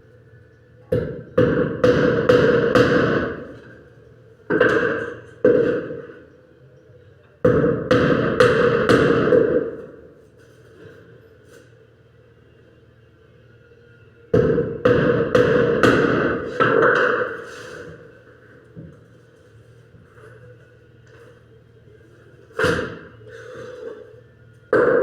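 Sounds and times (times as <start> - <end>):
hammer striking wood: 0.9 - 3.4, 4.5 - 6.0, 7.5 - 9.8, 14.4 - 17.4, 24.7 - 25.0.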